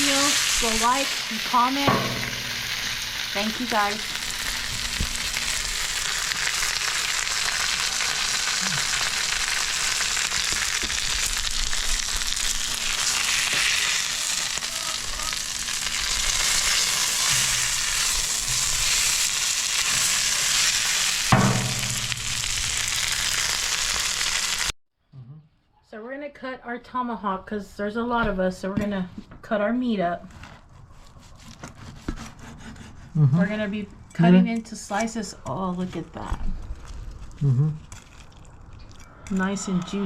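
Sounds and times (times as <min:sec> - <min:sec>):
food sizzling on a griddle: 0:00.0 - 0:24.7.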